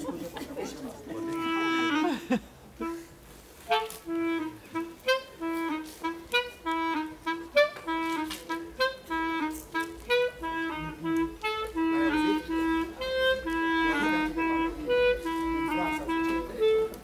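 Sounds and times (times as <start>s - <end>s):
clarinet playing lively tune: 1.1s - 17.0s.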